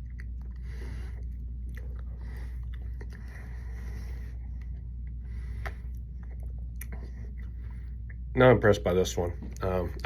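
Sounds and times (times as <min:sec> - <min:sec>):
person chewing: 0:00.0 - 0:08.3
low hum: 0:00.0 - 0:10.0.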